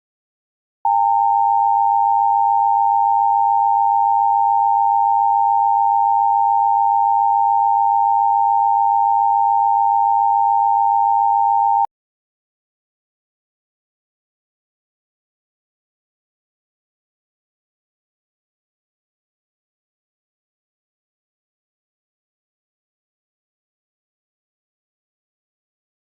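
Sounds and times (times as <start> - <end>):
loud steady alarm tone: 0.9 - 11.9.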